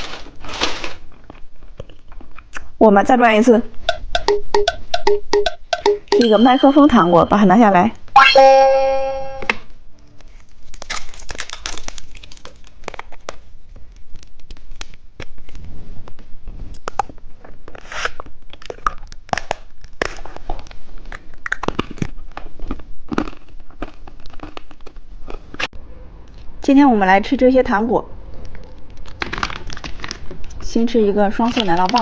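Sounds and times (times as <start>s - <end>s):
plastic wrappers crinkling: 0.0s - 2.0s, 10.3s - 15.6s, 28.8s - 32.0s.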